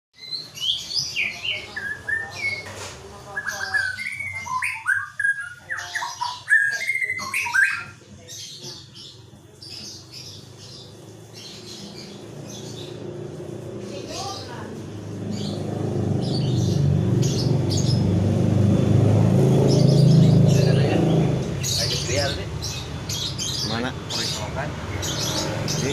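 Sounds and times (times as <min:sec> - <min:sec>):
bird singing whistled phrases: 0:03.4 - 0:08.0.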